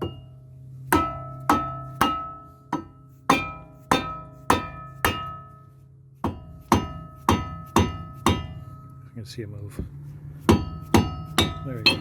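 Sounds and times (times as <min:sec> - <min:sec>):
hammer striking ringing metal rotor: 0:00.9 - 0:05.6, 0:10.5 - 0:12.0.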